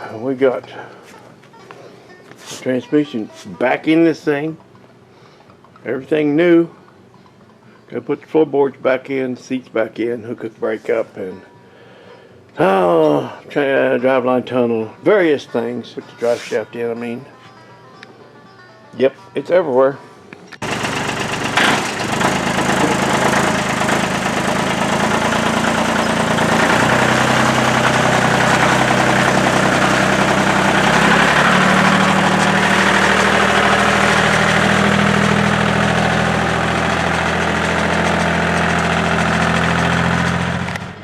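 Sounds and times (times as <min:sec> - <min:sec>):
engine idling: 0:20.6 - 0:41.0.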